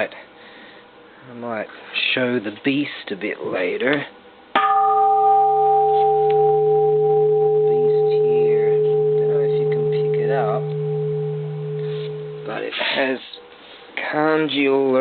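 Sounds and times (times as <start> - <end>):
temple bell ringing: 4.6 - 12.7.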